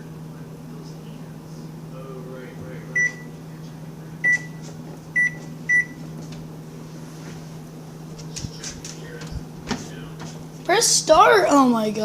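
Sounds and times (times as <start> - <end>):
steady low hum: 0.0 - 12.0
microwave keypad beeps: 3.0 - 3.3, 4.2 - 4.6, 5.2 - 6.0.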